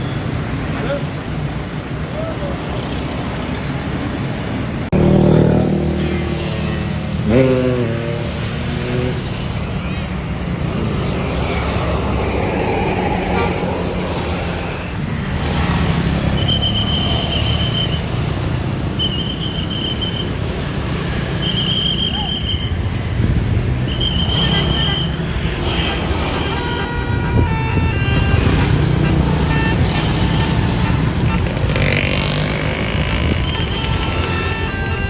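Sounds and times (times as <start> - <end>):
bus engines rumbling: 0.0 - 35.0
bus horn playing a tune: 24.4 - 35.0.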